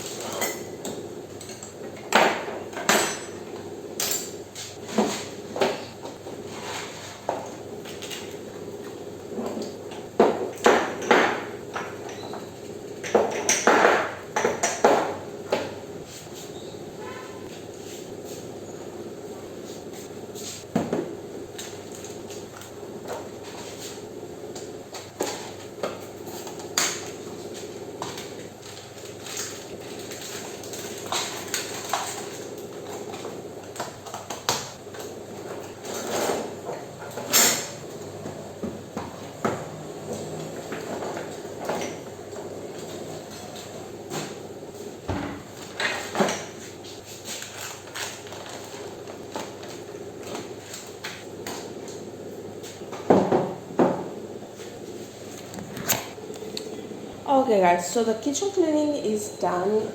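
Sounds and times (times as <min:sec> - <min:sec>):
kitchenware clinking and clattering: 0:00.0 - 0:08.4, 0:09.3 - 0:15.8
steady hum: 0:49.9 - 0:59.9.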